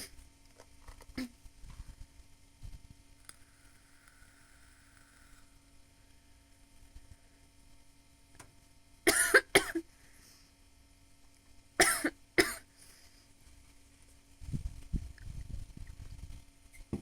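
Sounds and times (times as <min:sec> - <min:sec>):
woman coughing: 0:09.1 - 0:09.9, 0:11.8 - 0:12.7.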